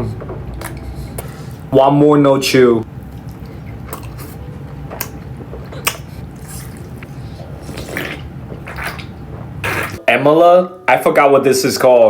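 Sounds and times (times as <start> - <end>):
wet mouth eating noises: 0.0 - 1.8, 2.8 - 10.0
sharp mouth clicks: 5.0 - 10.0.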